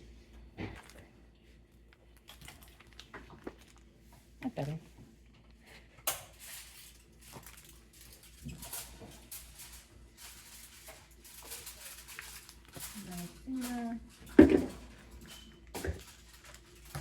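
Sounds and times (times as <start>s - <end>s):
light clatter of things handled: 2.4s - 17.0s
rustling and scraping: 6.3s - 17.0s.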